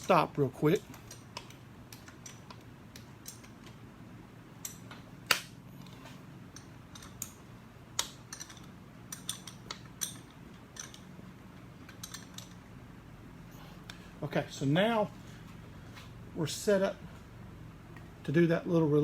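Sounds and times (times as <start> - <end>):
low steady hum: 0.0 - 19.0
metal clicks and clinks: 0.8 - 3.8, 4.6 - 7.4, 8.0 - 11.1, 11.8 - 12.6.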